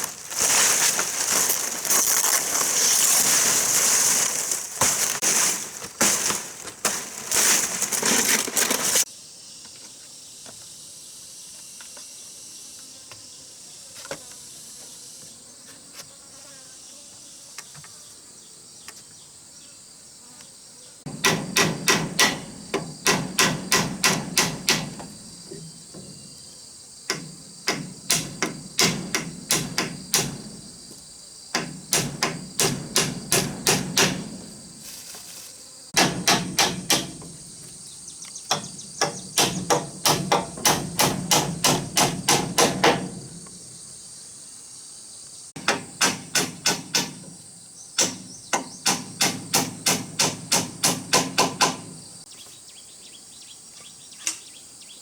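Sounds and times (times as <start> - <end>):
crickets chirping: 0.0 - 55.0
hammer striking wood: 21.1 - 25.1, 27.1 - 30.5, 31.6 - 34.5, 36.0 - 37.4, 38.5 - 43.2, 45.6 - 47.3, 48.0 - 51.9.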